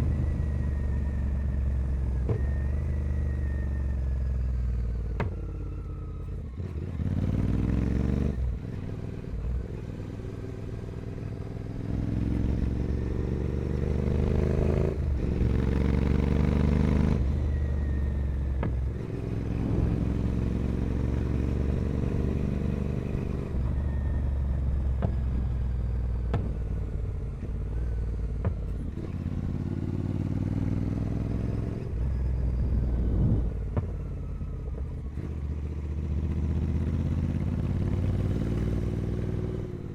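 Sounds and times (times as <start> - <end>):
motorcycle engine revving hard: 6.6 - 9.2, 11.6 - 17.4.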